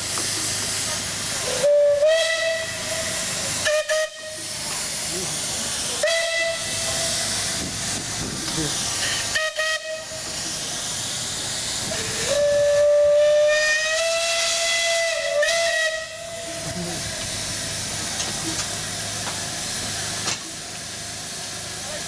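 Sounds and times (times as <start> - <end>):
steam hissing: 0.0 - 22.0
steam whistle blowing: 1.4 - 4.5, 6.0 - 7.2, 9.0 - 10.2, 12.0 - 16.8.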